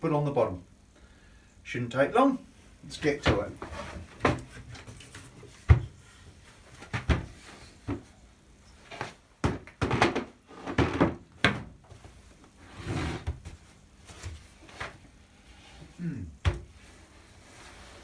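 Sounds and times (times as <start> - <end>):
wooden knocks and clunks: 3.1 - 6.0, 6.8 - 8.1, 9.0 - 12.0, 16.4 - 16.8.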